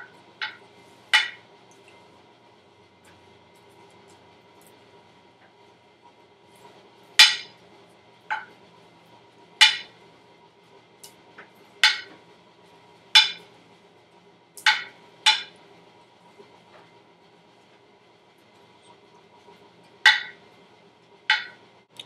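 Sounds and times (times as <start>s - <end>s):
utensil clinking against a dish: 0.4s - 1.4s, 13.2s - 13.5s, 14.6s - 15.6s, 20.0s - 20.4s, 21.3s - 21.6s.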